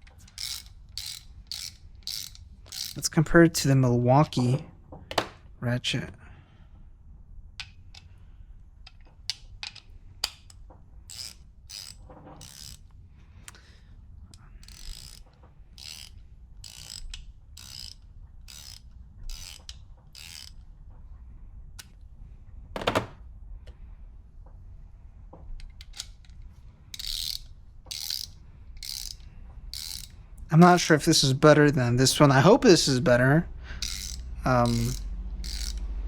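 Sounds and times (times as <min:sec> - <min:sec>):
socket ratchet clicking: 0:00.0 - 0:03.1, 0:08.9 - 0:13.7, 0:14.3 - 0:20.7, 0:25.6 - 0:30.3, 0:33.8 - 0:36.0.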